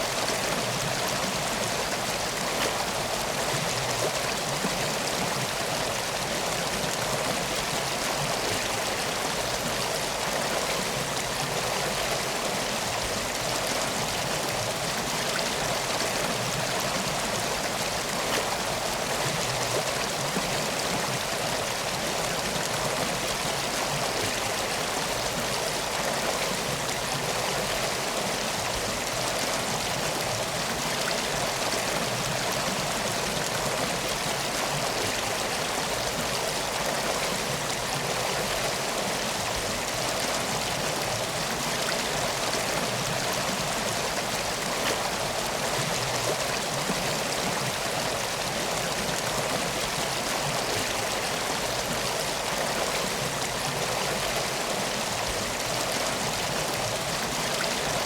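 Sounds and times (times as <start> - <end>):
stream water flowing: 0.0 - 58.0.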